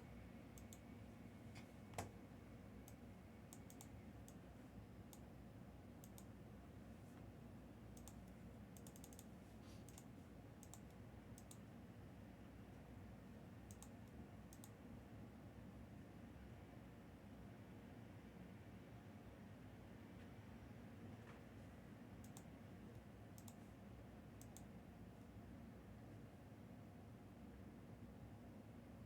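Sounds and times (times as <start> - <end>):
computer keys typing: 0.6 - 0.8, 2.8 - 4.4, 6.0 - 6.3, 8.0 - 11.7, 13.7 - 14.8, 22.2 - 22.5, 23.4 - 23.7, 24.4 - 24.7.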